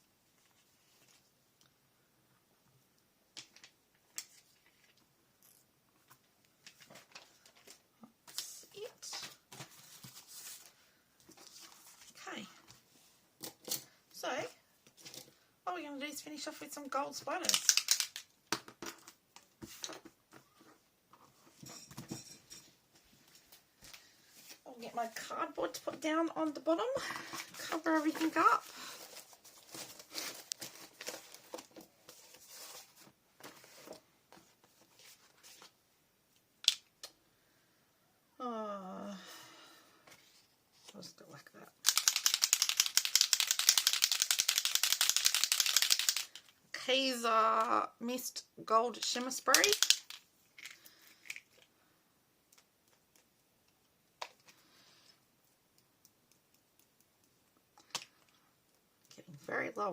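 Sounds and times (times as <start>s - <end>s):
cardboard and paper rustling: 6.6s - 12.2s, 27.1s - 35.8s.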